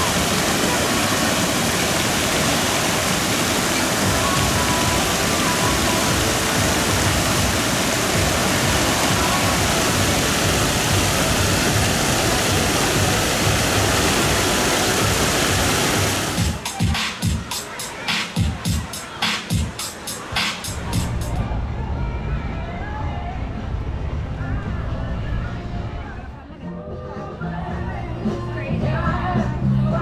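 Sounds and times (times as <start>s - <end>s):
falling and splashing water: 0.0s - 16.9s
faint music: 0.0s - 30.0s.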